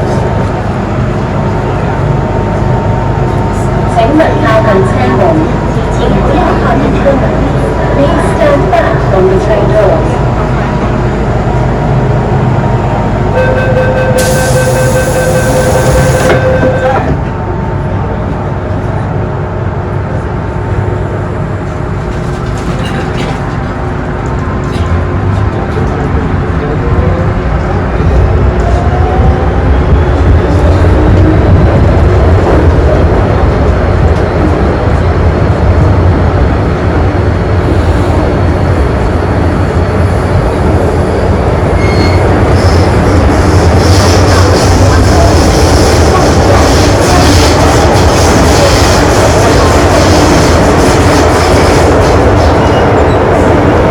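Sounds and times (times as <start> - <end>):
train running rumble: 0.0 - 53.9
steady electronic warning tone: 13.3 - 17.2
high-pitched wheel squeals: 41.7 - 43.1.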